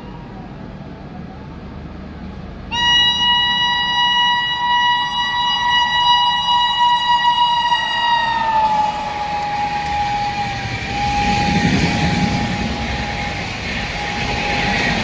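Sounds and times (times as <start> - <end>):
train horn blast: 2.7 - 15.0
low rumble: 8.8 - 15.0.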